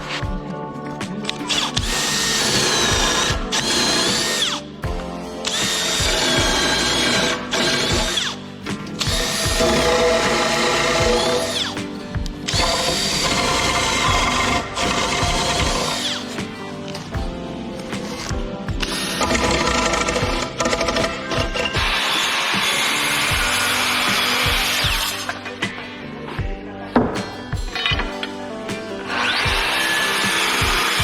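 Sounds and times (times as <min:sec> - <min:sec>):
background music: 0:00.0 - 0:31.0
power tool cutting timber: 0:01.5 - 0:04.7, 0:05.4 - 0:11.8, 0:12.5 - 0:16.4, 0:19.0 - 0:25.4, 0:29.1 - 0:31.0.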